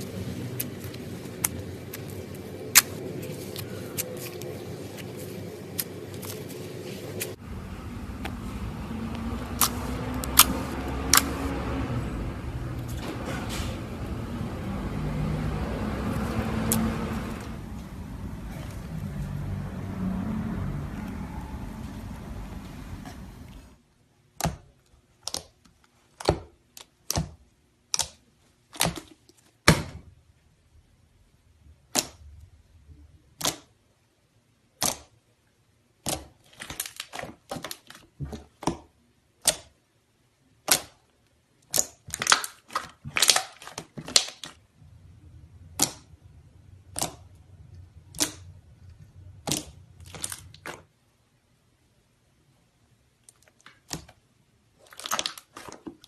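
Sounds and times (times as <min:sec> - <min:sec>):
steady noise: 0:00.0 - 0:23.8.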